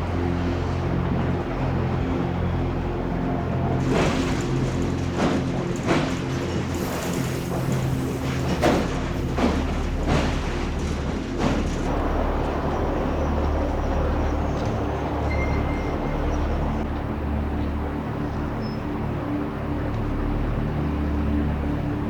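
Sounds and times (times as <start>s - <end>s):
train rumbling: 0.0s - 22.0s.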